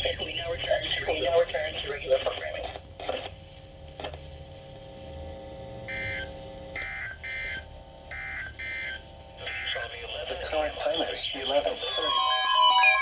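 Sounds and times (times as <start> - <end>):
buzzy digital data bursts: 11.8 - 13.0
faint steady tones: 11.8 - 13.0.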